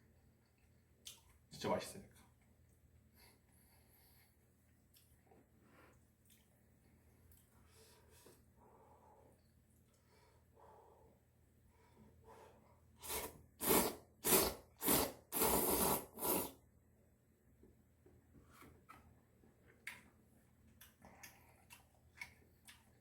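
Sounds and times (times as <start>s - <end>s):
soft chewing clicks: 4.5s - 7.6s, 19.6s - 23.0s
person slurping: 13.0s - 16.6s.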